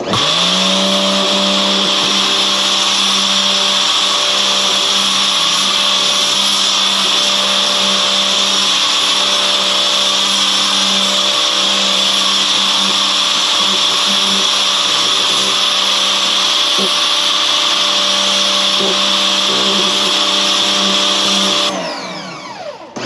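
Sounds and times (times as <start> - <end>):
pressure washer spraying: 0.0 - 21.8.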